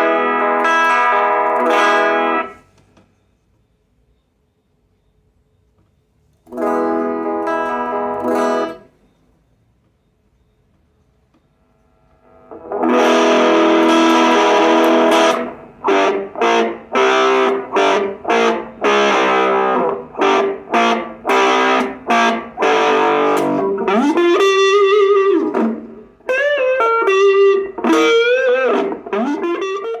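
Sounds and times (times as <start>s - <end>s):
distorted electric guitar: 0.0s - 2.6s, 6.5s - 8.9s, 11.6s - 30.0s.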